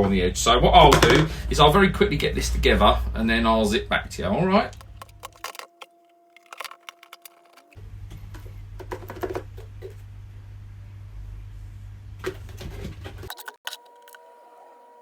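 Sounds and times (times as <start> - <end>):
plastic clicks and knocks: 4.8 - 7.8.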